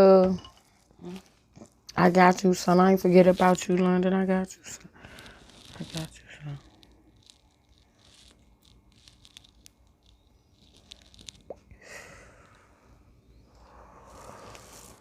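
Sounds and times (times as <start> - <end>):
close-up chewing with mouth clicks: 4.9 - 11.8.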